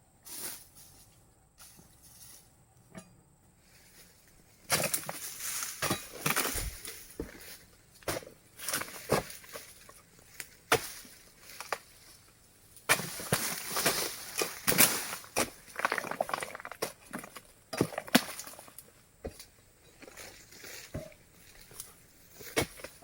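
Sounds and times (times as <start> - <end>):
dry leaves rustling and snapping: 4.7 - 23.0.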